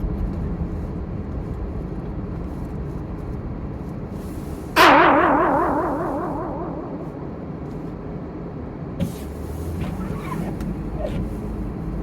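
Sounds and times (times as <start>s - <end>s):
car road and engine noise: 0.0s - 12.0s
warbling tone with echo: 4.8s - 7.8s.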